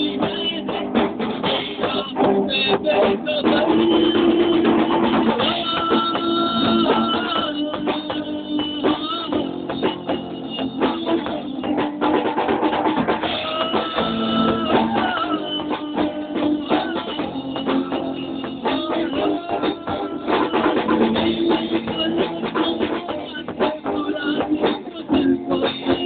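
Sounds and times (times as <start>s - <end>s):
rock band playing live: 0.0s - 26.0s.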